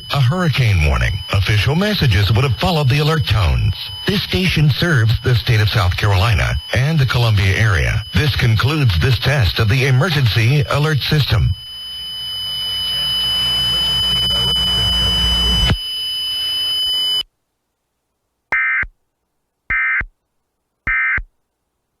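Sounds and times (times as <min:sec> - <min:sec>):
steady hiss: 0:00.0 - 0:15.6
low hum: 0:00.0 - 0:15.8
high whine: 0:00.0 - 0:17.2
warbling data bursts: 0:00.0 - 0:17.2.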